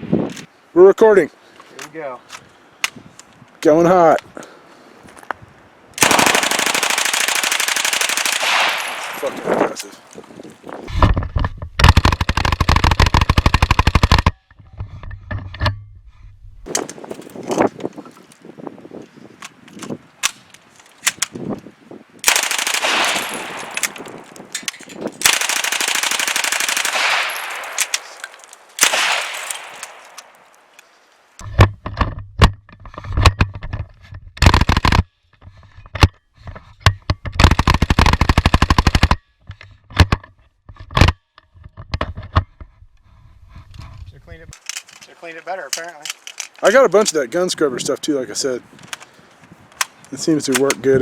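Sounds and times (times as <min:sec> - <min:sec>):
automatic gunfire bursts: 0:06.0 - 0:09.4, 0:22.2 - 0:24.0, 0:25.2 - 0:28.2, 0:28.8 - 0:30.1
single gunshots: 0:08.2 - 0:09.8, 0:22.2 - 0:24.3, 0:25.2 - 0:30.5.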